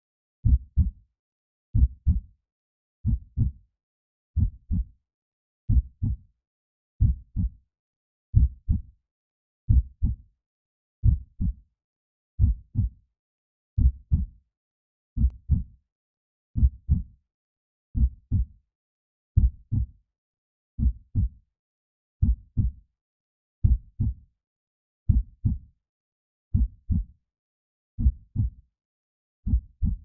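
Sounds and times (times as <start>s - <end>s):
heartbeat thumps: 29.5s - 30.0s.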